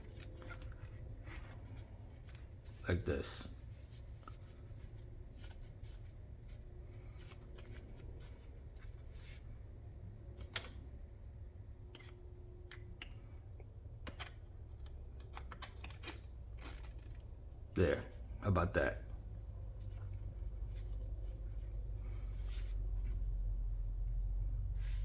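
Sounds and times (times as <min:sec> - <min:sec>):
light clicks and rustles: 0:00.0 - 0:09.5
steady low hum: 0:00.0 - 0:25.0.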